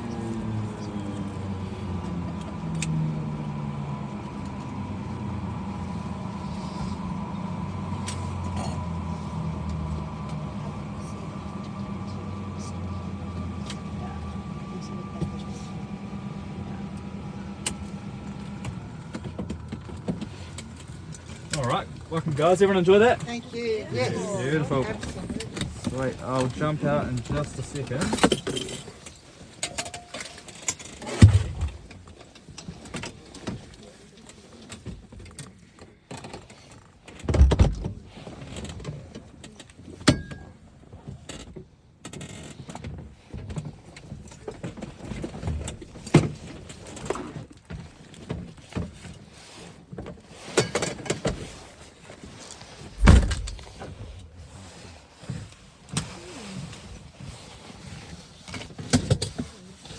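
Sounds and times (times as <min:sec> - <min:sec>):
heavy thumps: 0:52.9 - 0:54.2.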